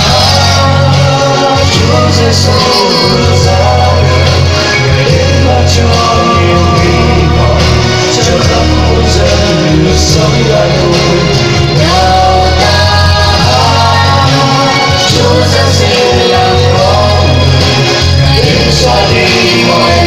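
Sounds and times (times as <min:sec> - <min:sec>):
choral hymn singing: 0:00.0 - 0:20.0
steady bass: 0:00.0 - 0:20.0.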